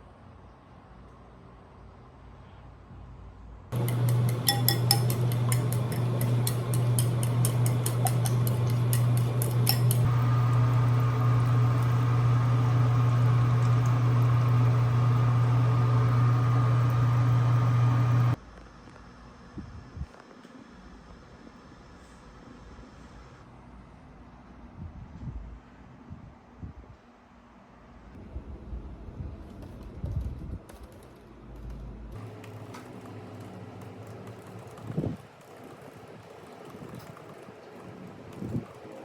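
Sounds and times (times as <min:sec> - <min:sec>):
kitchen appliance humming: 0:03.7 - 0:18.4, 0:32.2 - 0:39.0.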